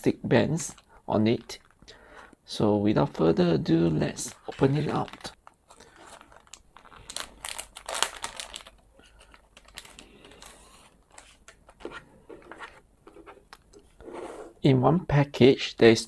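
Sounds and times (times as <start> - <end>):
packaging crinkling and rustling: 0.6 - 1.9, 4.1 - 12.8.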